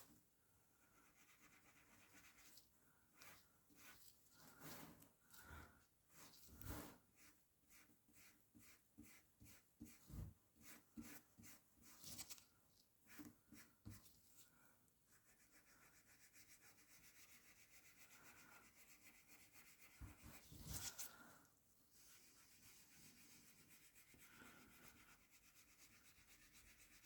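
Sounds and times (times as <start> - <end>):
hand rubbing card surface: 19.9 - 21.3.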